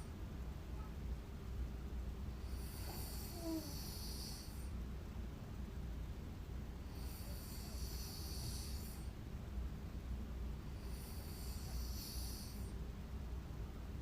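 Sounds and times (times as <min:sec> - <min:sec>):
woman snoring: 0:02.4 - 0:04.6, 0:06.9 - 0:09.1, 0:10.8 - 0:12.7.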